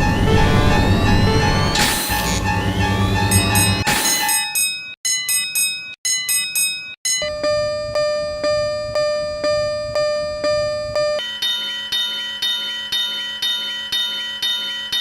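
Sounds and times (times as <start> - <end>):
piano-like chime notes: 0.0 - 3.9
ding-ding crossing alarm: 3.2 - 15.0.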